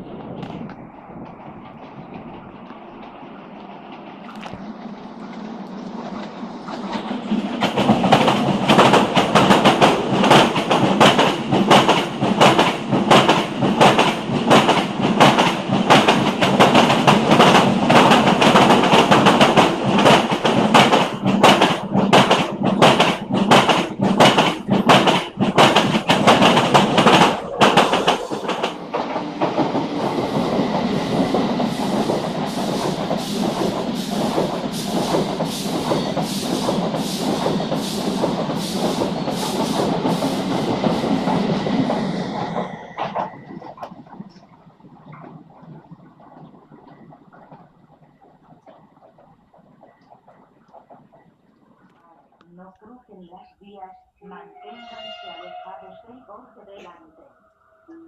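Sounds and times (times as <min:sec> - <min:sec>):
clickety-clack of rail joints: 0:00.0 - 0:53.0
train wheels on rail: 0:00.0 - 0:57.0
quiet train rumble: 0:00.0 - 0:58.0.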